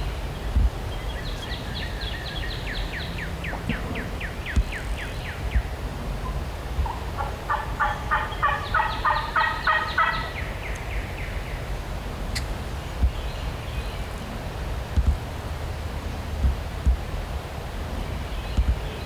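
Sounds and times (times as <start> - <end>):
wind on microphone: 0.0 - 9.3, 10.0 - 19.0
turkey gobbling: 6.2 - 10.8.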